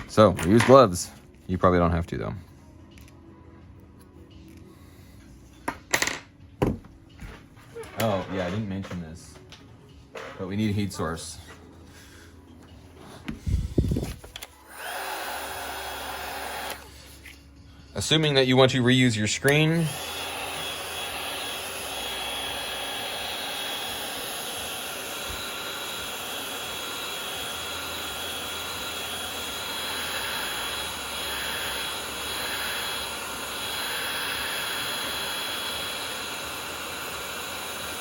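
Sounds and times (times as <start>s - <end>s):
heat gun blowing: 13.4s - 17.3s, 19.4s - 38.0s.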